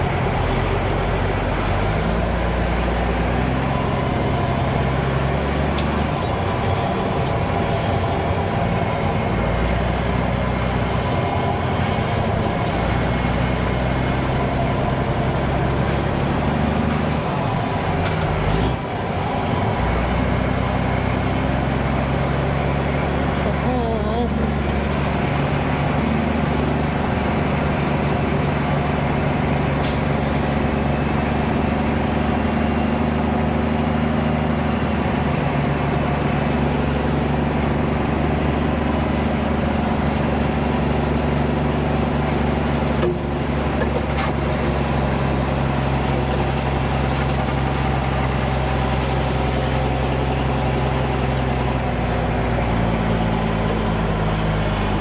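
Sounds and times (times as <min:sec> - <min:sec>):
diesel truck engine running: 0:00.0 - 0:55.0
click: 0:05.4 - 0:06.2, 0:29.8 - 0:30.9.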